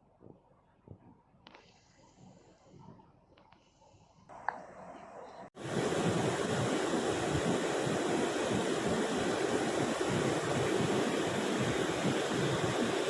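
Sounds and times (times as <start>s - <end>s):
waterfall roaring: 5.6s - 13.0s.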